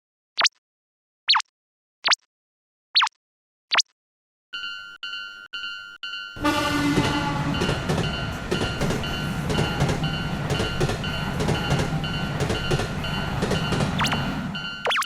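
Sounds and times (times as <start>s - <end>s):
crossing warning bell ringing: 4.6s - 14.9s
train wheels clacking on rails: 6.4s - 14.8s.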